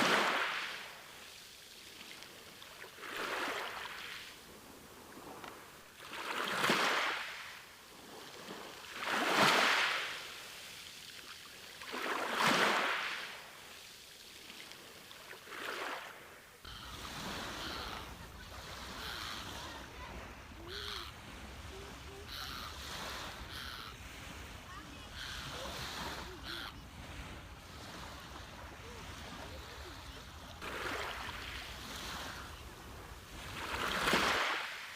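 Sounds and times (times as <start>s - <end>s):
sea waves washing on beach: 0.0s - 34.9s
faint voices or bird calls: 16.5s - 30.6s.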